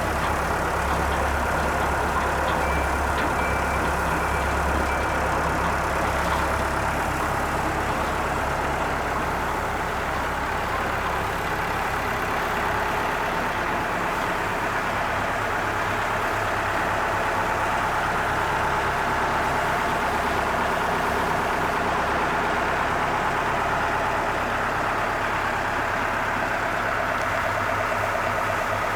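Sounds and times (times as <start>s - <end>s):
concrete mixer turning: 0.0s - 9.5s
tractor engine running: 0.0s - 28.9s.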